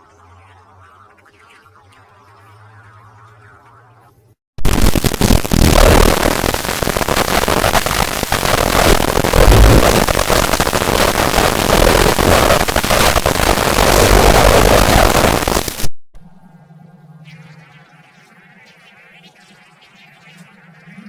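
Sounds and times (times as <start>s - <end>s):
harsh distorted noise: 4.6s - 15.9s.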